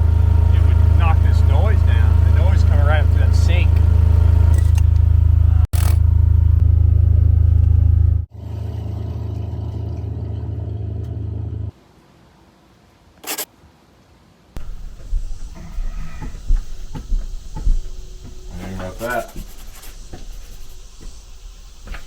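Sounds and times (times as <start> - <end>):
diesel generator humming: 0.0 - 11.7, 14.6 - 22.0.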